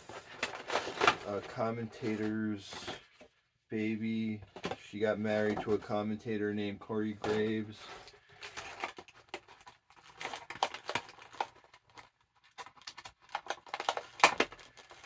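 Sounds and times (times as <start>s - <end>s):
packaging being handled: 0.0s - 3.2s, 7.2s - 15.0s.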